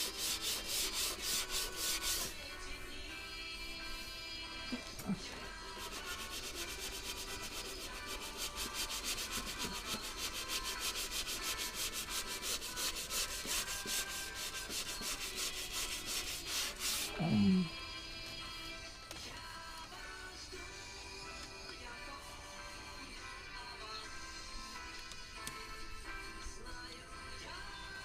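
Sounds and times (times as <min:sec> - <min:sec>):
sandpaper rubbing on metal panel: 0:00.0 - 0:02.4, 0:05.7 - 0:17.1
faint music: 0:00.0 - 0:28.0.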